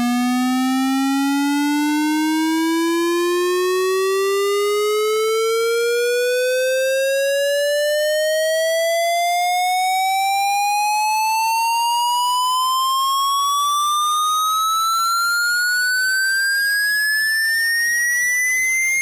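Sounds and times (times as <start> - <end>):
electronic tone sweeping upward: 14.9 - 19.0.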